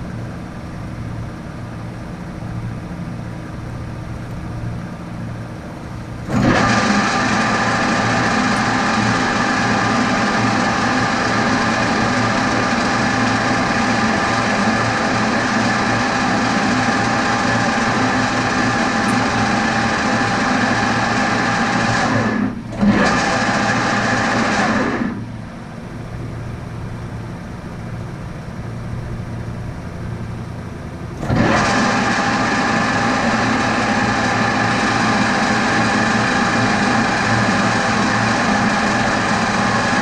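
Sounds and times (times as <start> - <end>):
metal lathe whining: 6.2 - 25.4, 31.2 - 40.0.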